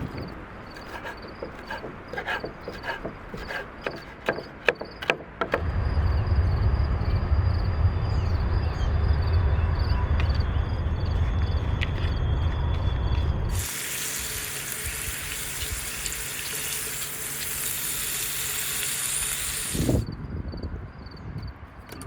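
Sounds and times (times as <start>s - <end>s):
knife chopping on wooden board: 0.8s - 5.6s
steady low rumble: 5.6s - 13.6s.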